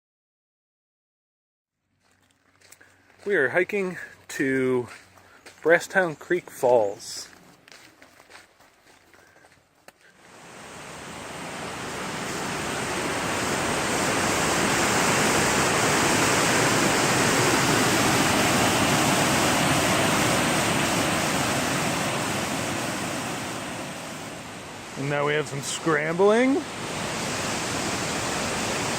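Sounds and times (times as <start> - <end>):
water rushing in creek: 10.1 - 28.9.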